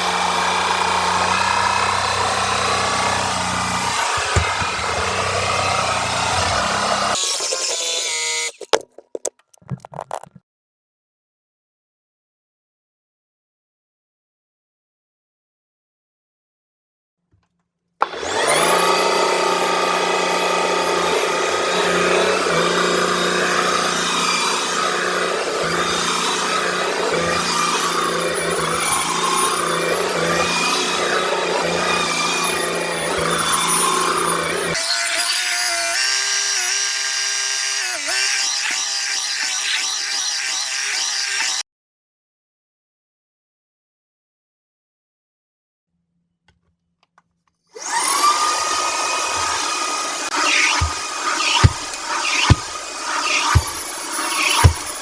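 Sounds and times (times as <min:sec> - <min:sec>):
vacuum cleaner running: 0:00.0 - 0:08.5, 0:18.0 - 0:34.8, 0:47.8 - 0:55.0.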